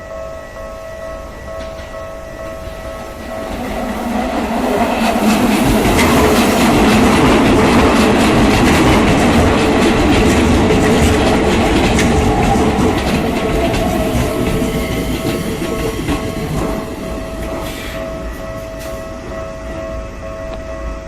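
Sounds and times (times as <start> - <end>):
electric train rumbling past: 0.0 - 21.0
level crossing warning bell: 0.0 - 21.0
wheels clacking over rail joints: 1.4 - 17.9.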